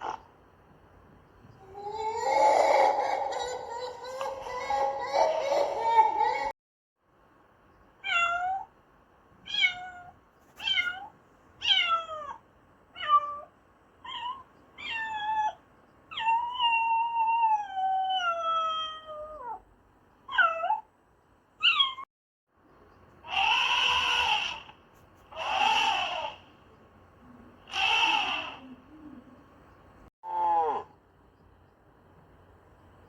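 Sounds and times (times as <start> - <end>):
cat meowing: 9.5 - 12.4, 13.0 - 19.6, 23.3 - 24.6, 27.7 - 28.6.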